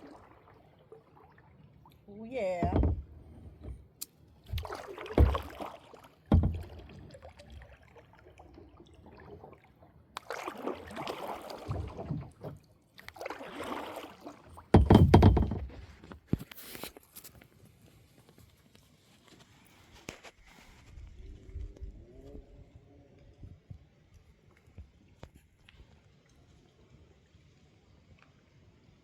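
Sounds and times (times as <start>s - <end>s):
water sloshing: 0.0s - 16.4s
low thumps and bumps: 2.6s - 3.8s, 14.8s - 15.8s.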